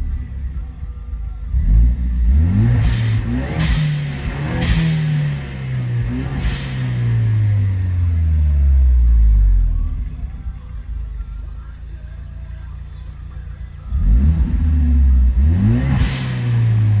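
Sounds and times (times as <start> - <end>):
car engine revving: 1.4 - 10.3, 13.8 - 17.0.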